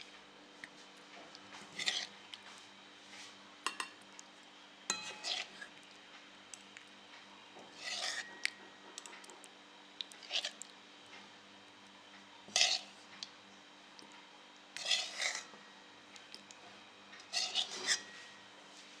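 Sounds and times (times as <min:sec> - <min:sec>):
metal spoon scraping a pan: 0:01.7 - 0:02.1, 0:04.9 - 0:05.7, 0:07.8 - 0:08.4, 0:12.5 - 0:12.9, 0:14.8 - 0:15.6, 0:17.3 - 0:18.4.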